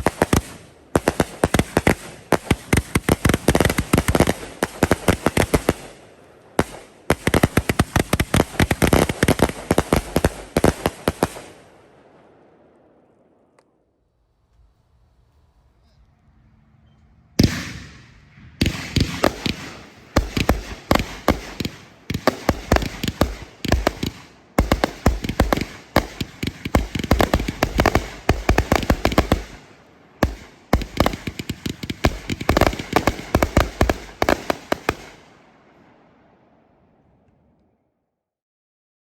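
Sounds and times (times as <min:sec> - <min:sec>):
firework bangs: 0:00.0 - 0:11.8, 0:17.4 - 0:35.4.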